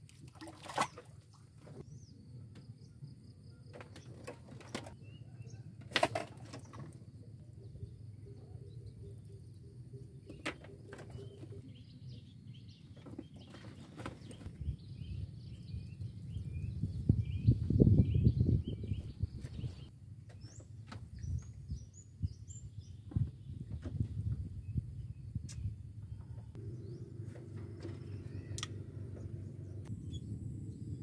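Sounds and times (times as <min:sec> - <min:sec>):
small birds chirping faintly: 0:06.4 - 0:31.0
low outdoor rumble: 0:23.7 - 0:31.0.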